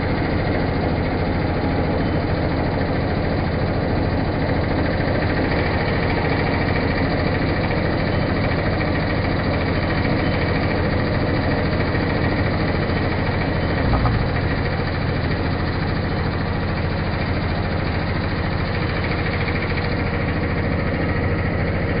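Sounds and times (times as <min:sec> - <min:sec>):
pillar drill humming: 0:00.0 - 0:21.8
low thump: 0:13.9 - 0:14.4.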